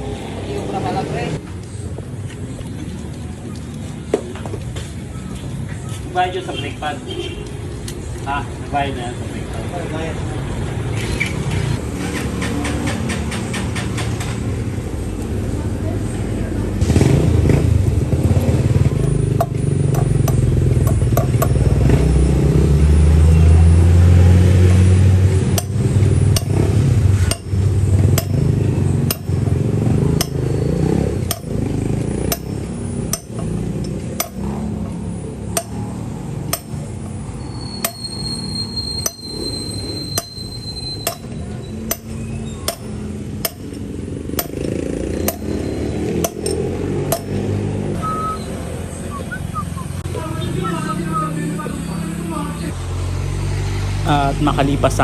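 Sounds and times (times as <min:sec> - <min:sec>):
hammer blows on metal: 0:25.5 - 0:29.4, 0:37.8 - 0:47.4.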